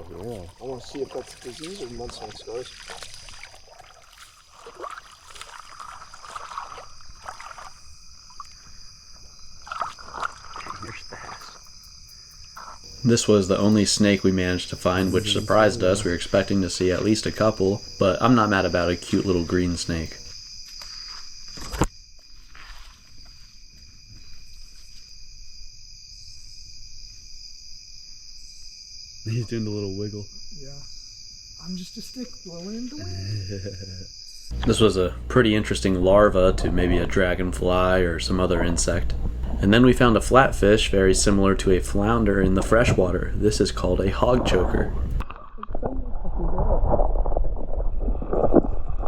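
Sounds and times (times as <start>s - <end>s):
floodwater sloshing and splashing: 0.0s - 8.6s, 9.6s - 11.4s
insects trilling: 0.0s - 45.4s
high-pitched insect drone: 24.1s - 44.9s.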